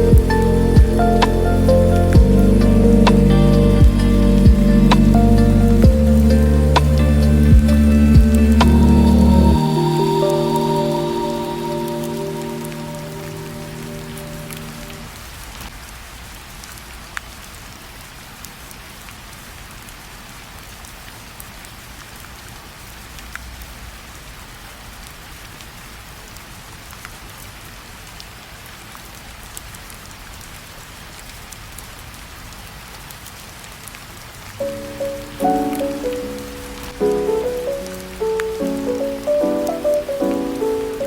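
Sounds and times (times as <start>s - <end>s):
low rumble: 0.0s - 15.0s
steady rain falling: 0.0s - 41.0s.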